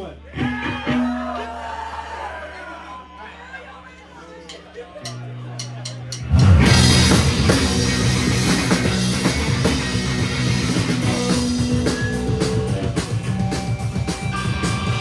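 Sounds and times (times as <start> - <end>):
electric guitar: 0.3 - 1.6, 5.1 - 15.0
bass guitar: 0.3 - 1.9, 5.0 - 15.0
drum kit: 5.0 - 15.0.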